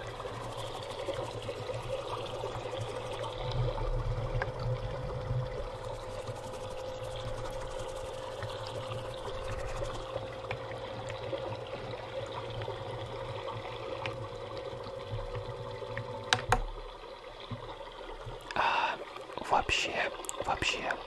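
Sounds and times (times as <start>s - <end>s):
humidifier motor hum: 0.0s - 17.0s
water trickling: 0.0s - 21.0s
rain sound effect from speaker: 18.3s - 21.0s.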